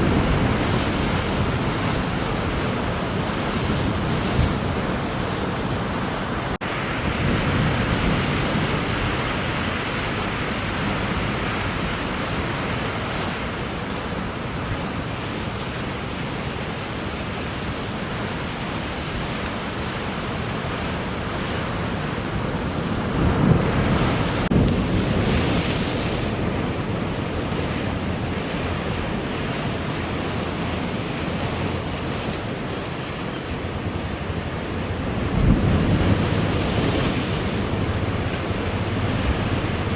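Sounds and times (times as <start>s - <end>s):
wind buffeting microphone: 0.0s - 12.2s, 20.7s - 39.9s
ocean surf breaking: 0.0s - 39.9s.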